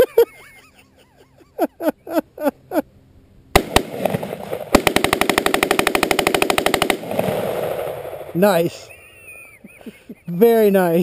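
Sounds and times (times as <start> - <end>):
rifle shots: 3.5 - 8.7
rapid gunfire: 3.6 - 8.6.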